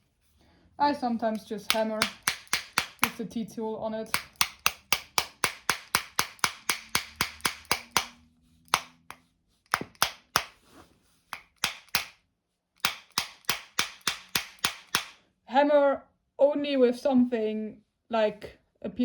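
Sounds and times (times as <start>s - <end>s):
metal tool tapping axle: 1.2s - 3.3s, 4.0s - 12.2s, 12.8s - 15.2s.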